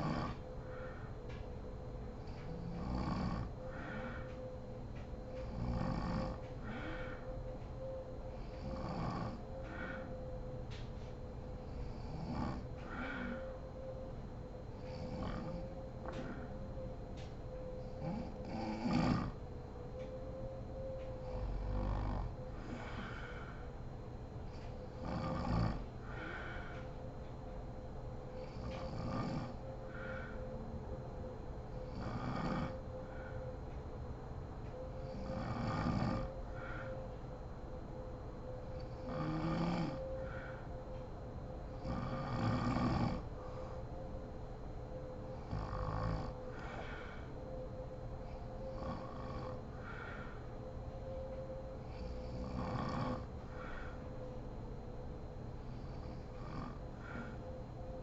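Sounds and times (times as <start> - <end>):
woman snoring: 0.0 - 0.9, 2.2 - 4.4, 5.4 - 7.2, 8.4 - 10.1, 11.6 - 13.4, 14.8 - 16.4, 17.8 - 19.4, 21.2 - 23.6, 24.5 - 26.8, 28.4 - 30.4, 31.8 - 32.8, 35.0 - 36.9, 38.8 - 40.5, 41.8 - 43.8, 45.3 - 47.2, 48.6 - 50.3, 51.8 - 54.0, 55.7 - 57.5
woman breathing softly: 0.0 - 37.8, 38.4 - 58.0.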